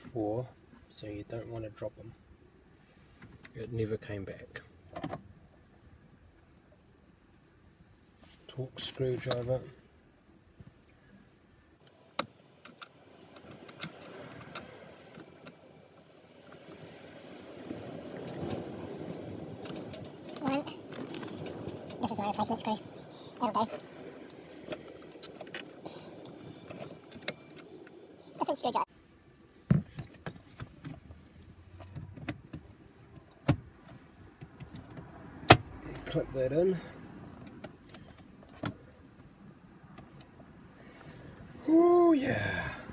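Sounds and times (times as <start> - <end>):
low rustle of handling: 7.9 - 11.2, 16.5 - 22.0.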